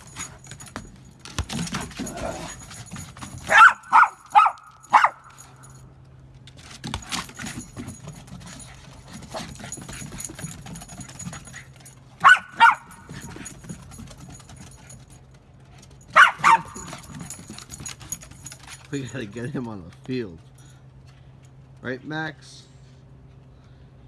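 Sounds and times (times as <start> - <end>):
dog barking: 1.7 - 5.7, 12.2 - 13.6, 16.1 - 18.1.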